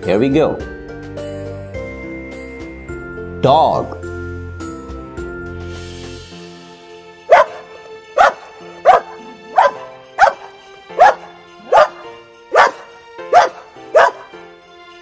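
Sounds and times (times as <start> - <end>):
soft background music: 0.0 - 15.0
dog barking: 7.3 - 14.4.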